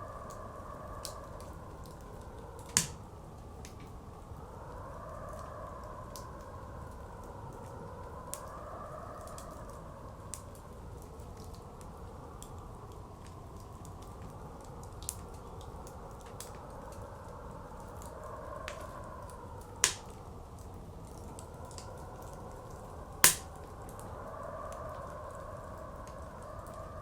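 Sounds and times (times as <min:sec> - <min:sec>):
wood fire crackling and popping: 0:00.3 - 0:04.1, 0:10.3 - 0:24.1.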